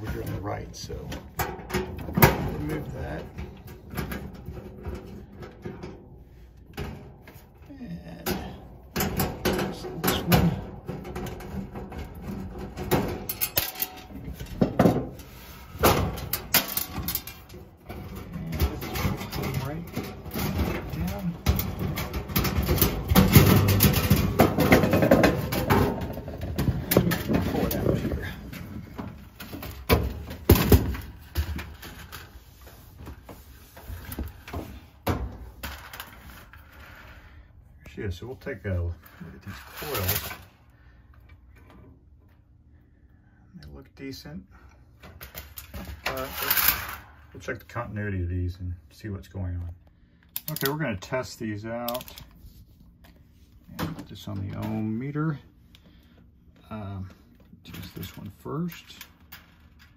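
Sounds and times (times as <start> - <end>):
metal knocks and clunks: 8.2 - 32.0.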